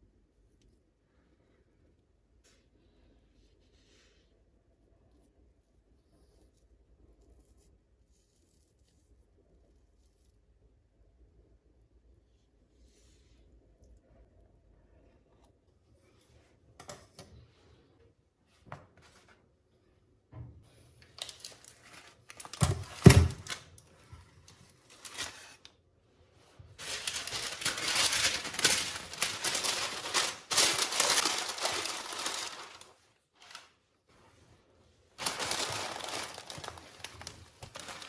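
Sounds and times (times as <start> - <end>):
rustling handling noise: 21.0 - 38.0.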